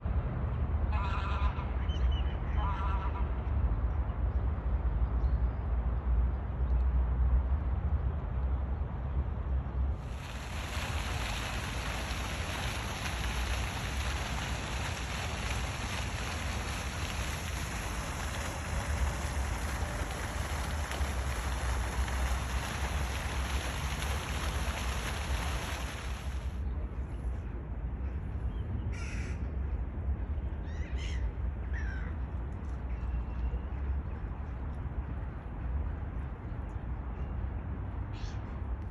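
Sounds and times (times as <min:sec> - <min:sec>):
steady rushing hiss: 0:10.0 - 0:26.6.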